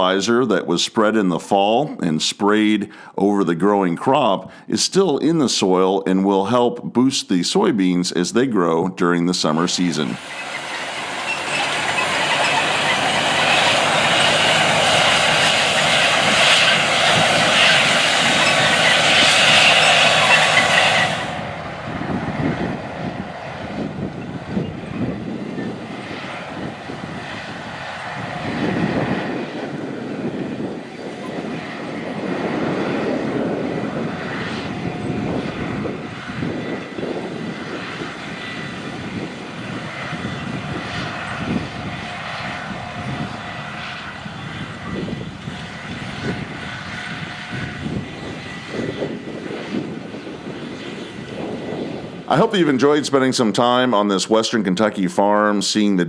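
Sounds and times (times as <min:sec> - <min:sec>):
farm machine engines running: 0:09.4 - 0:22.6
rising and falling engine: 0:09.4 - 0:53.9.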